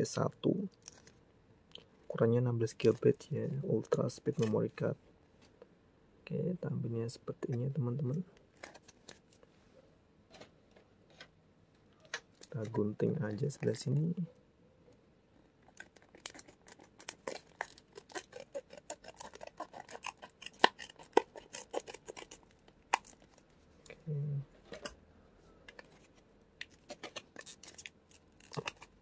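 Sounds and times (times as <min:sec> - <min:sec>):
scissors snipping packaging: 0:16.0 - 0:23.3, 0:26.6 - 0:29.0.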